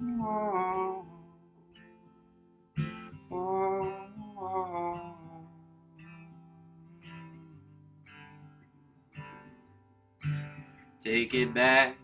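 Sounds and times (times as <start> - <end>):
acoustic guitar strummed softly: 0.0 - 12.0.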